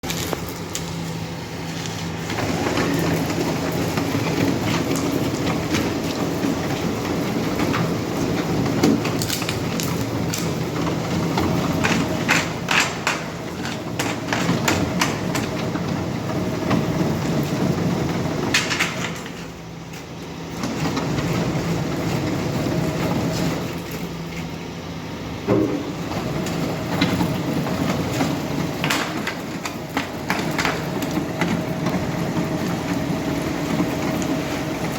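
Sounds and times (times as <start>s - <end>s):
heavy machinery engines running: 0.0s - 34.9s.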